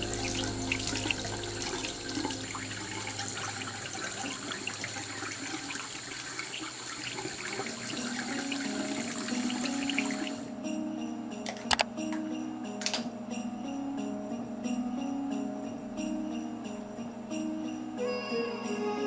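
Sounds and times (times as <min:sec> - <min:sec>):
water running with splashes: 0:00.0 - 0:10.5.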